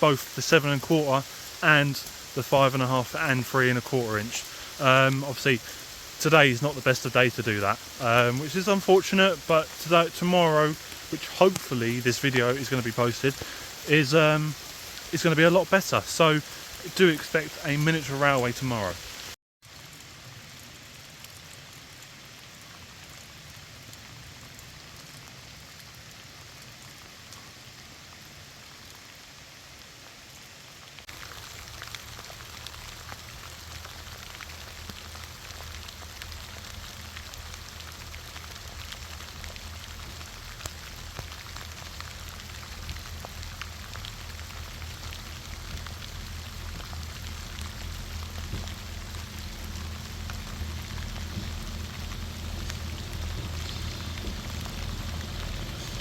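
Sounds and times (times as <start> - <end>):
rain pattering: 0.0 - 56.0
low hum: 34.6 - 56.0.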